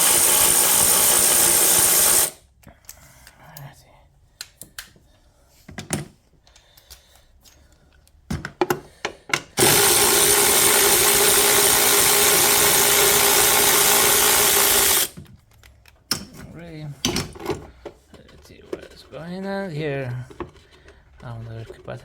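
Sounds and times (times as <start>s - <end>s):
power drill running: 0.0s - 2.4s, 9.6s - 15.2s.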